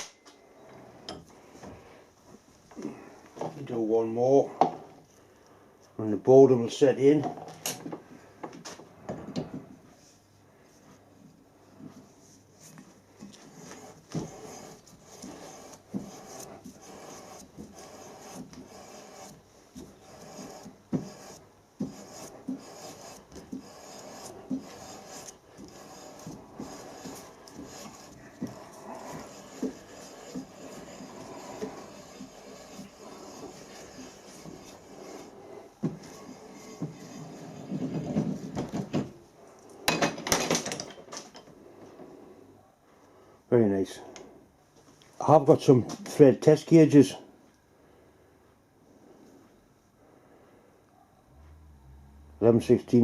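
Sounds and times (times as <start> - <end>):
threading die scraping metal: 13.5 - 38.5.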